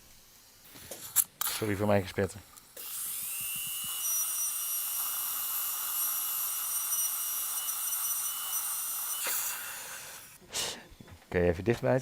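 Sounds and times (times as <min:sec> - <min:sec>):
hiss of air and water spray: 0:00.0 - 0:02.4
dental drill whining: 0:01.4 - 0:10.4.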